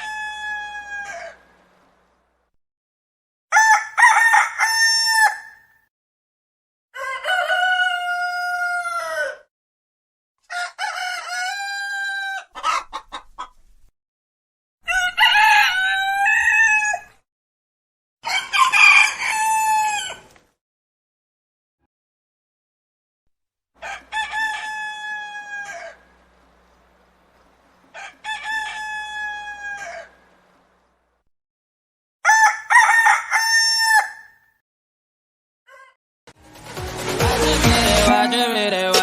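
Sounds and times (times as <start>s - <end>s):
short rooster calls: 0.0s - 1.6s, 23.8s - 26.2s, 27.9s - 30.4s, 35.7s - 36.0s
roosters crowing: 0.0s - 2.0s, 3.5s - 5.7s, 7.0s - 9.5s, 10.5s - 12.8s, 14.8s - 17.2s, 18.2s - 20.3s, 23.8s - 30.8s, 32.2s - 34.4s.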